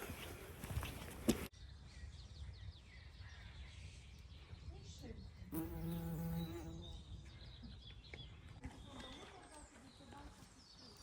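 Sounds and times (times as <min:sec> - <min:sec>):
flying insect buzzing: 0:05.5 - 0:06.8.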